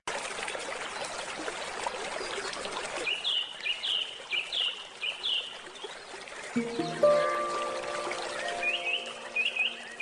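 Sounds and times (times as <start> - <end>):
stream water babbling: 0.1 - 10.0
bird calling: 6.6 - 10.0.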